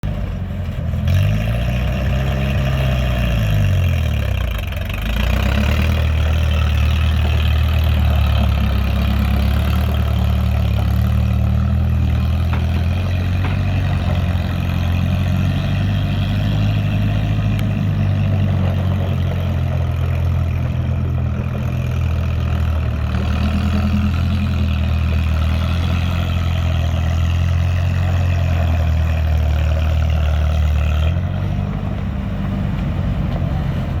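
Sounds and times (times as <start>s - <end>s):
backhoe engine running: 0.0s - 34.0s.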